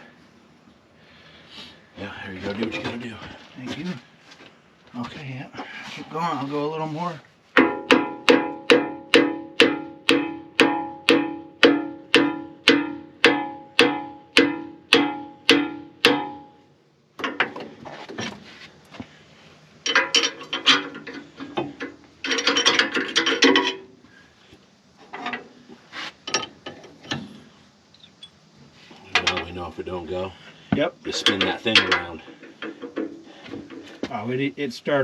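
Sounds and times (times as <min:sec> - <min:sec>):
hammer striking steel pin: 0:07.6 - 0:16.5
metal clinking and scraping: 0:19.8 - 0:24.0, 0:25.0 - 0:29.7, 0:31.1 - 0:34.0.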